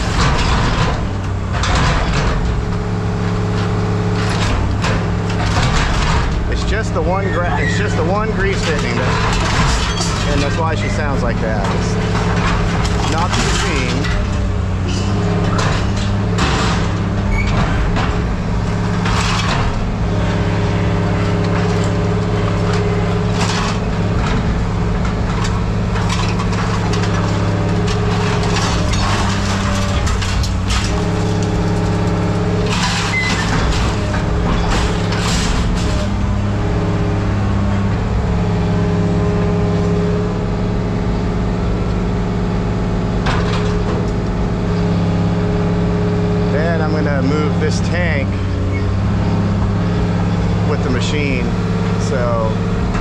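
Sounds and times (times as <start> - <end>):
machine clanks: 0.0 - 38.4, 39.0 - 45.8, 46.5 - 53.0
diesel machine running: 0.0 - 53.0
hissing or squealing bursts: 7.1 - 8.0.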